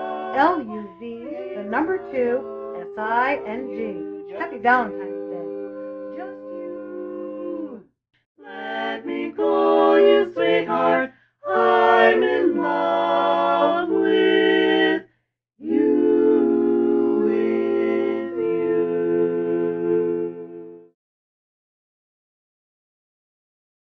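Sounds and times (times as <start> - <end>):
women singing a cappella harmony: 0.0 - 7.8, 8.4 - 20.3.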